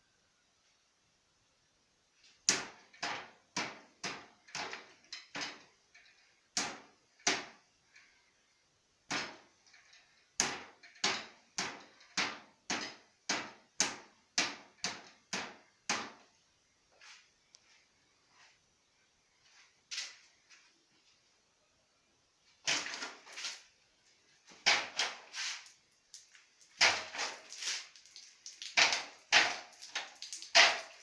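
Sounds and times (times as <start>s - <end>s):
punches hitting water bottles: 2.4s - 5.6s, 6.6s - 7.6s, 9.1s - 9.5s, 10.4s - 16.2s, 26.8s - 31.0s.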